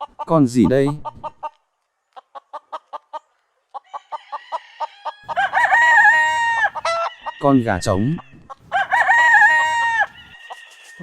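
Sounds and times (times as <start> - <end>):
rooster clucking: 0.0 - 11.0
rooster crowing: 3.9 - 11.0.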